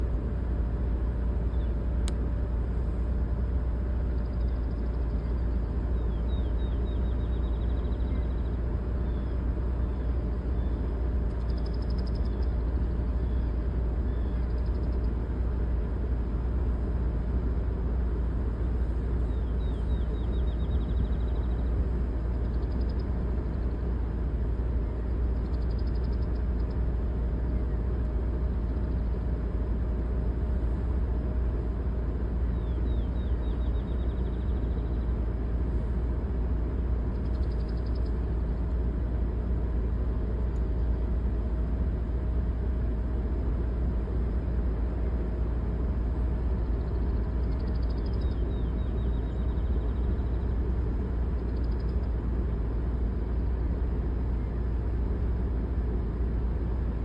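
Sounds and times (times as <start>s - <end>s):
low rumbling noise: 0.0s - 57.0s
birds trilling and chirping: 18.3s - 41.0s, 43.6s - 57.0s.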